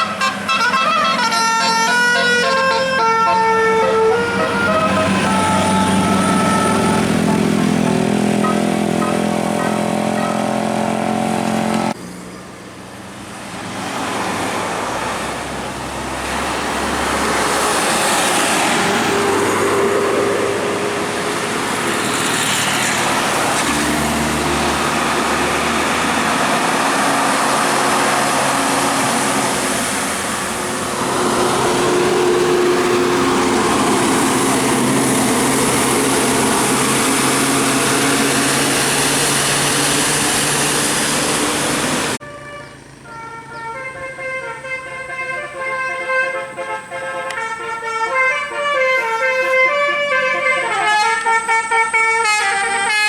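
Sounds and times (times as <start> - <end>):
multi-tone bus horn tune: 0.0 - 12.0, 24.8 - 39.4, 41.9 - 53.0
heavy vehicles passing: 0.0 - 53.0.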